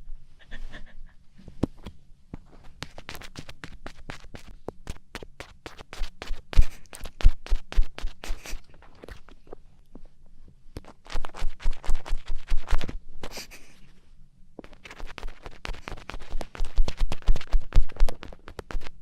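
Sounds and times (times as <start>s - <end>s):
earpick scratching on microphone: 2.5s - 9.4s, 10.8s - 13.7s, 14.6s - 19.0s.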